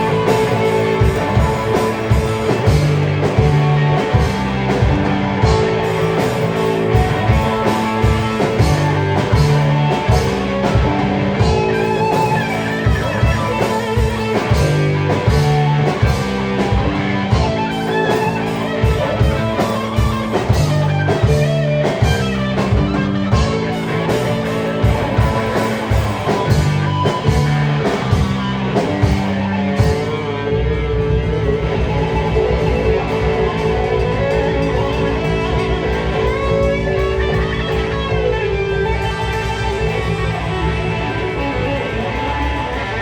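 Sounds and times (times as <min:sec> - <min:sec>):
drum hits: 0:00.0 - 0:30.4
live rock band playing: 0:00.0 - 0:43.0.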